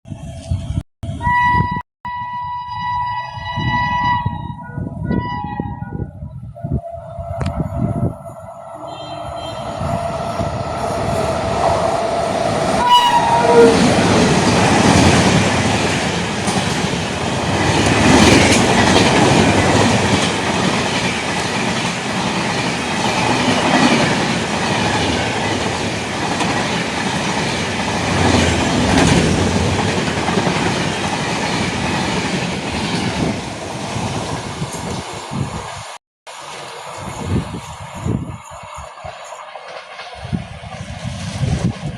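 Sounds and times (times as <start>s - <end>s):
train wheels rumbling on rails: 7.1s - 41.9s
clickety-clack over rail joints: 13.5s - 33.6s, 39.0s - 41.9s.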